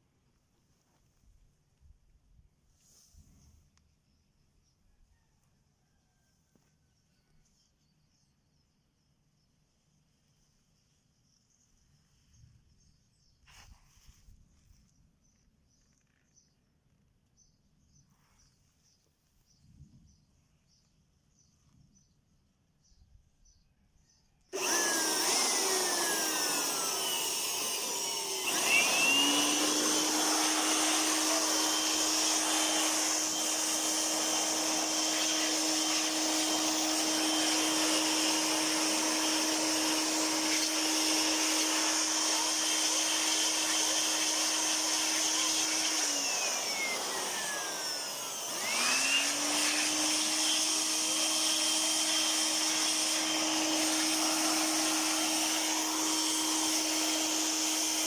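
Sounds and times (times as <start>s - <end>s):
vacuum cleaner motor running: 24.6s - 58.0s.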